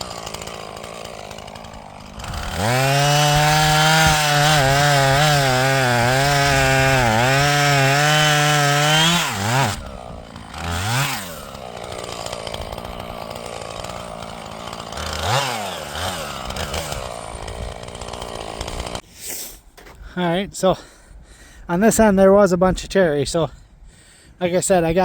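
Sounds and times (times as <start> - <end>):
chainsaw running: 0.0 - 19.0.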